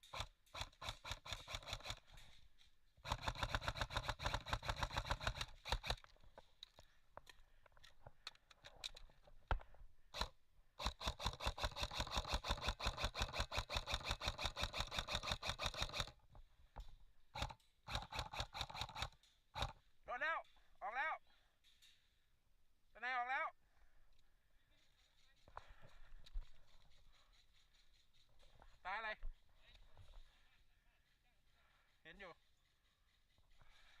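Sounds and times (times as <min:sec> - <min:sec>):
airsoft gun full-auto bursts: 0:00.0 - 0:02.3, 0:03.0 - 0:06.1, 0:10.1 - 0:16.2, 0:17.3 - 0:19.8.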